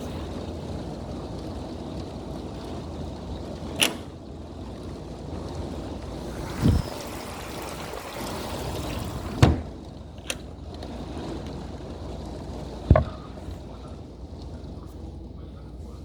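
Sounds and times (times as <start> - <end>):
heavy rain falling: 0.0 - 15.6.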